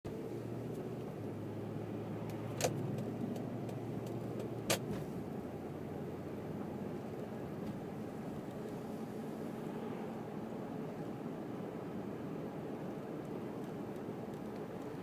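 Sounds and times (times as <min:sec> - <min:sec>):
car road and engine rumble: 0:00.1 - 0:15.0.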